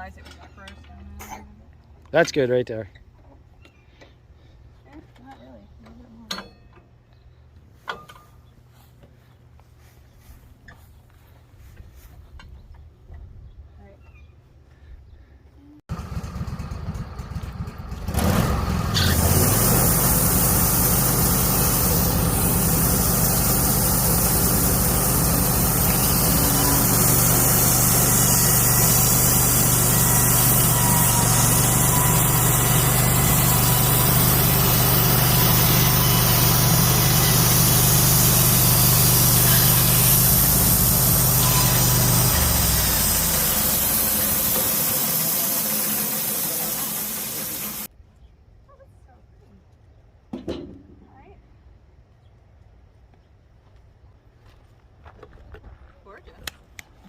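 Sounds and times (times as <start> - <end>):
bandsaw mill sawing log: 18.0 - 47.9.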